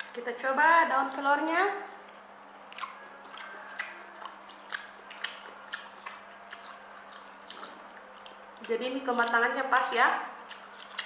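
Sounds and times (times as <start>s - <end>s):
chewing food: 0.0s - 0.3s, 1.0s - 1.3s, 1.9s - 11.0s
wet mouth clicks and smacks: 2.0s - 9.4s, 10.3s - 11.0s.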